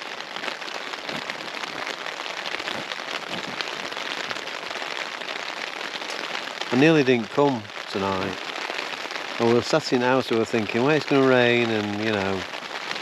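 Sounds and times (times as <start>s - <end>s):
rain pattering on a tent: 0.0s - 13.0s.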